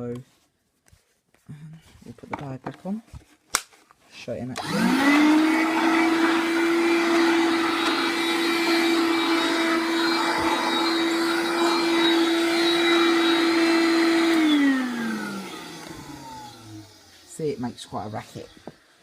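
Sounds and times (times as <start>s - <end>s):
vacuum motor winding down: 4.6s - 18.7s
handheld vacuum cleaner running: 4.6s - 19.0s.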